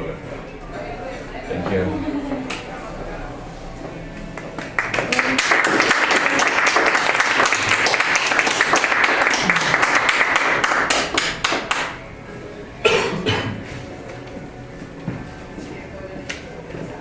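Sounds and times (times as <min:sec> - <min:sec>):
audience applauding: 0:04.3 - 0:12.0.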